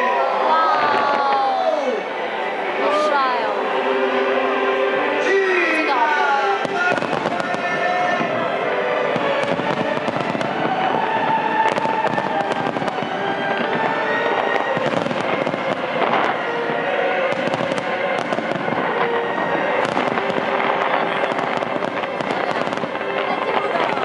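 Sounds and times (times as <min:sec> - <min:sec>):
fireworks bursting and crackling: 0:00.0 - 0:03.4, 0:05.7 - 0:24.0.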